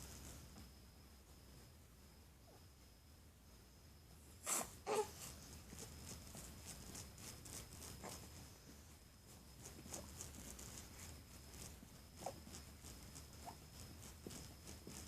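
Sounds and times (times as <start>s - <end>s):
soft rhythmic patting: 5.1s - 15.0s.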